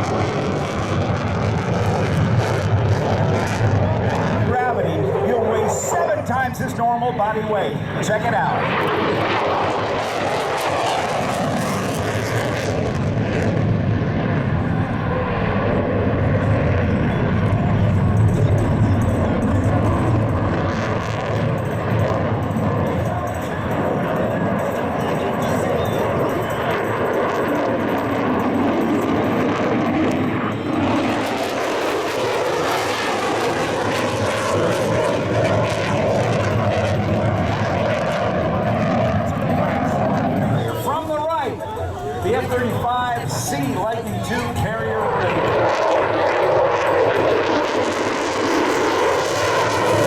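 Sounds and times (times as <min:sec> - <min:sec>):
jet engine rumble: 0:00.0 - 0:50.0.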